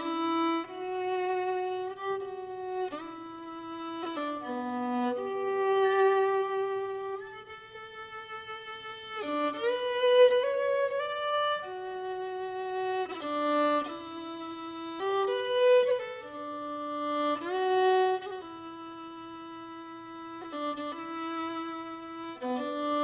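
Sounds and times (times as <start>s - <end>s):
violin playing slow melody: 0.0s - 23.0s.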